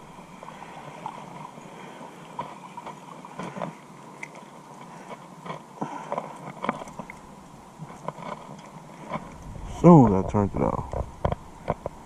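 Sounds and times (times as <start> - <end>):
faint thin steady tone: 0.0 - 7.8
low steady hiss: 0.0 - 12.0
faint irregular clicks and knocks: 2.2 - 9.5, 10.1 - 12.0.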